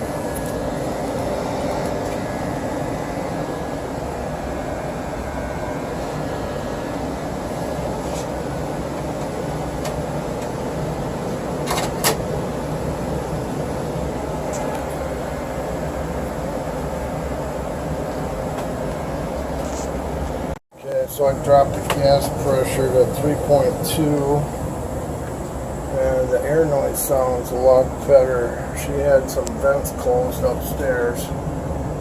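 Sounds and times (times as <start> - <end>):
furnace blower air rushing: 0.0 - 32.0
low rumble: 21.2 - 32.0.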